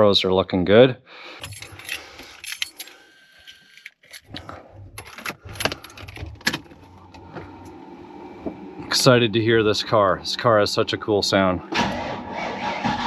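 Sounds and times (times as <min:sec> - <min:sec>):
keys jangling: 0:01.4 - 0:03.0.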